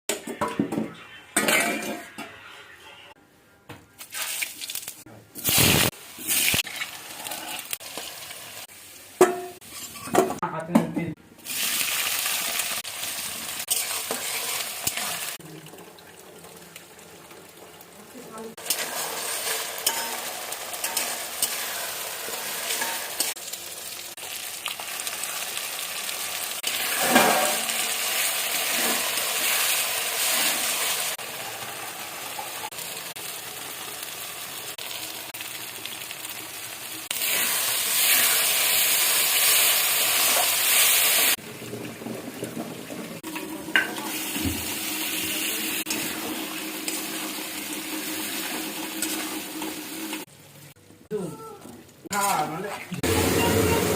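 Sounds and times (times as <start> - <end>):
food sizzling in oil: 4.0 - 10.3, 11.4 - 51.5, 52.1 - 53.9
spoon knocking on pan: 9.2 - 10.9.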